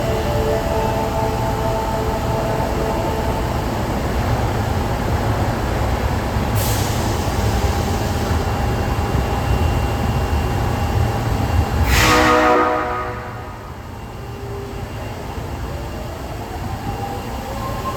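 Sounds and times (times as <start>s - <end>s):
subway train rumbling: 0.0s - 17.9s
train horn: 11.8s - 13.9s.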